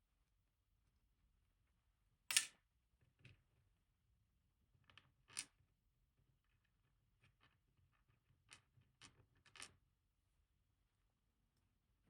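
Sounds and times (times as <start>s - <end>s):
small metallic clicks: 2.3s - 2.5s.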